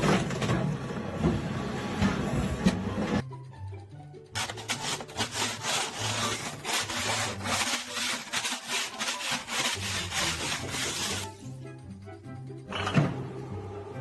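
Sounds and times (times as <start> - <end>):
rasping scraping strokes: 4.4 - 11.4.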